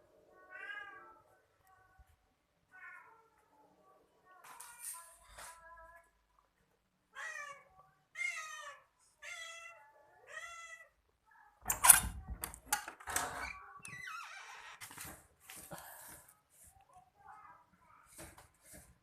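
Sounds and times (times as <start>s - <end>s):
cats yowling: 7.2s - 11.0s.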